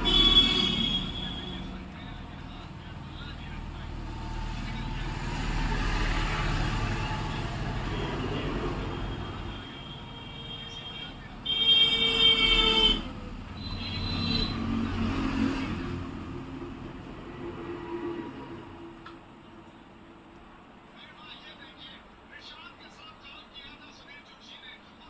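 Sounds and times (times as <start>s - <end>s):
loud car horn: 0.0s - 1.8s, 7.0s - 15.9s
vehicle engine rumbling by: 0.0s - 9.8s, 12.5s - 19.4s.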